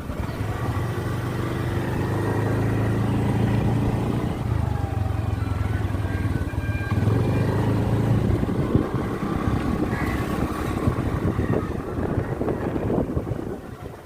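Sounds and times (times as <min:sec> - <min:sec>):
vehicle engine running: 0:00.0 - 0:14.0.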